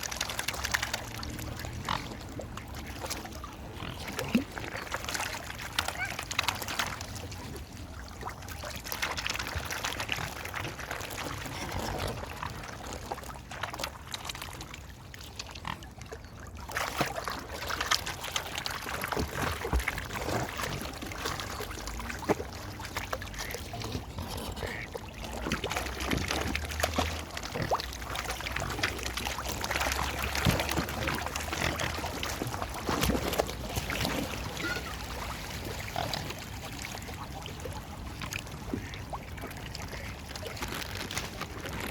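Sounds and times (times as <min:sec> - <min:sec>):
water splashing and sloshing: 0:00.0 - 0:41.9
waterfowl calling: 0:24.4 - 0:25.4.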